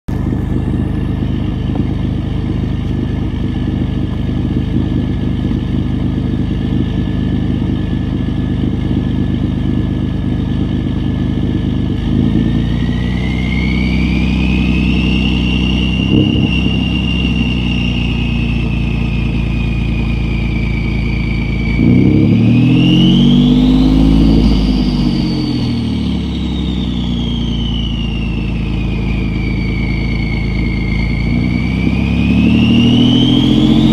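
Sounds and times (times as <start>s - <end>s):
engine revving: 0.1s - 33.9s
turbo whistle: 12.1s - 33.9s.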